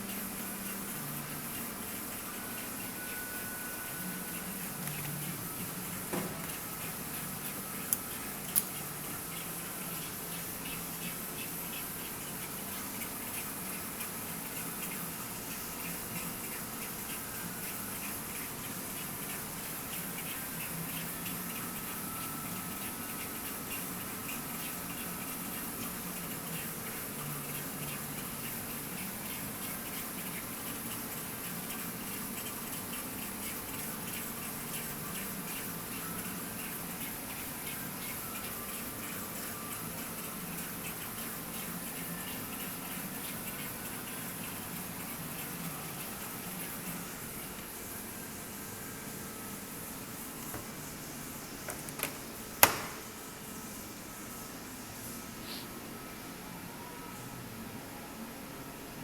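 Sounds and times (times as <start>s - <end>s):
flushing water hiss: 0.0s - 55.9s.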